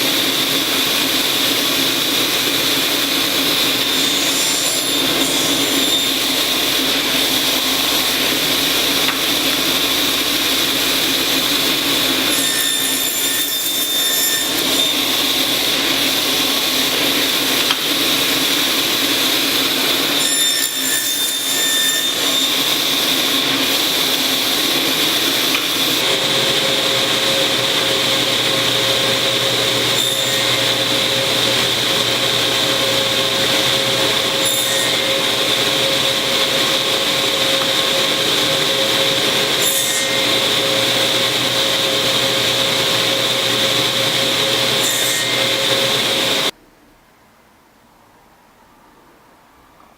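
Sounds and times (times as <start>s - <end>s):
woodworking power tool whining: 0.0s - 46.5s.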